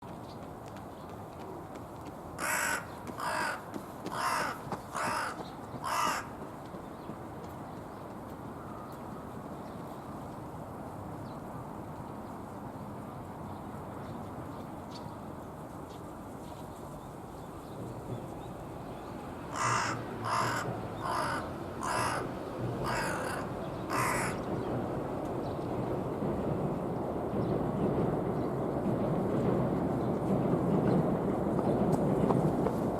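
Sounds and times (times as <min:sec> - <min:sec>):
crow cawing: 0:02.4 - 0:06.4, 0:19.5 - 0:24.4.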